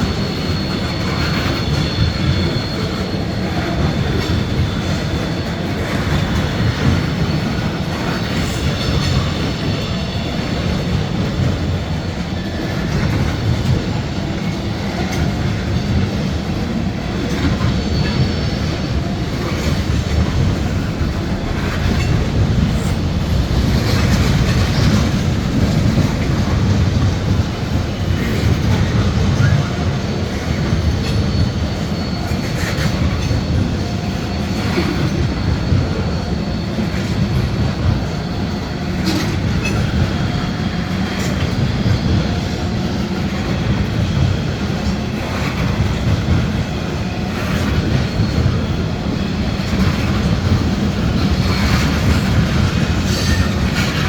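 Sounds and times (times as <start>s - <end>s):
high wheel squeal: 0.0s - 44.2s, 44.8s - 54.0s
train cars rumbling: 0.0s - 54.0s
wheels clicking over rail joints: 47.3s - 54.0s.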